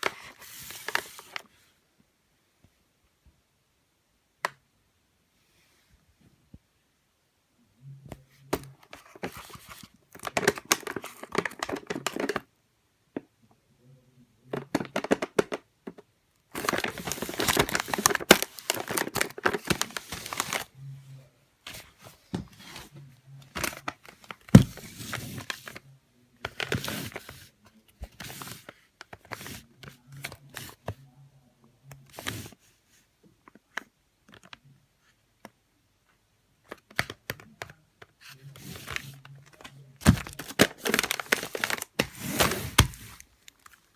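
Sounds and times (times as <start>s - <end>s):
packaging crinkling and rustling: 0.0s - 1.5s, 8.6s - 12.5s, 16.5s - 20.7s, 21.7s - 25.8s, 38.4s - 43.9s.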